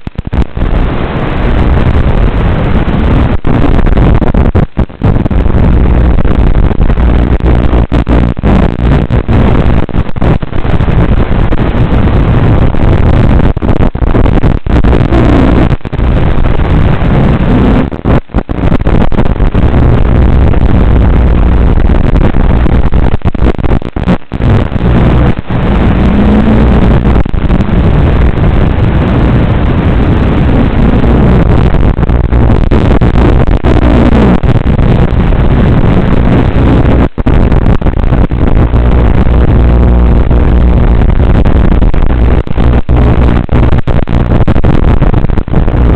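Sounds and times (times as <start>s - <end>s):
wind on microphone: 0.0s - 45.9s.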